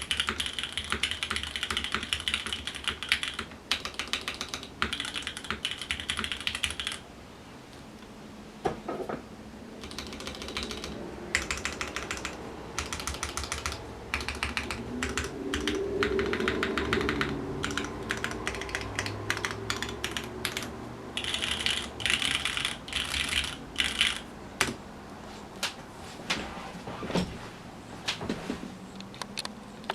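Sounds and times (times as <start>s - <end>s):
mechanical keyboard typing: 0.0s - 7.0s, 9.8s - 24.8s.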